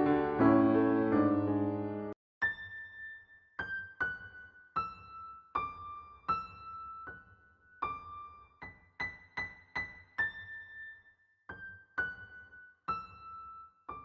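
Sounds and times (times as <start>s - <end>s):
slow keyboard melody: 0.0s - 2.2s.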